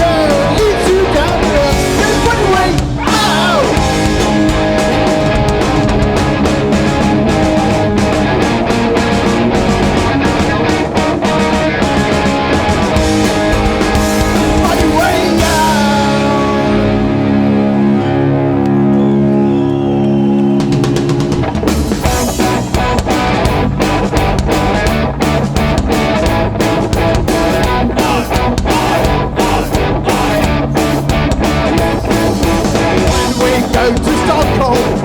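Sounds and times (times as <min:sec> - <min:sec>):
punk band playing: 0:00.0 - 0:35.0
guitar chord ringing: 0:15.8 - 0:19.8.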